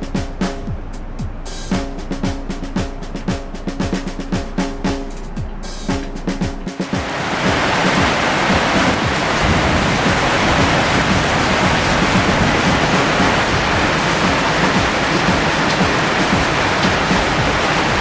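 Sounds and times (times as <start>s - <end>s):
wind: 0.0s - 18.0s
heavy rain: 6.8s - 18.0s.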